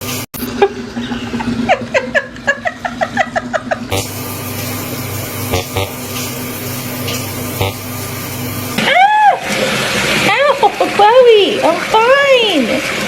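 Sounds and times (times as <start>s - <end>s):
person laughing: 0.5s - 3.9s
steady hiss: 3.9s - 8.8s.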